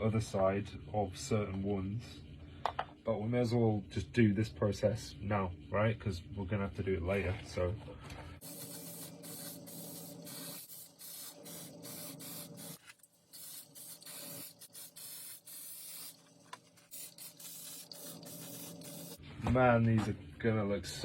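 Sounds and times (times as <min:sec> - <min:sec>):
aerosol can spraying: 0:08.4 - 0:19.2.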